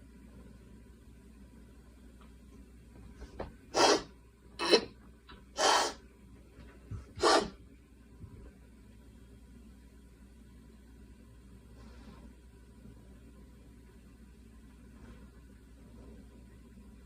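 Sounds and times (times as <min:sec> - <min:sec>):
girl coughing: 0:04.6 - 0:04.9, 0:07.2 - 0:07.5.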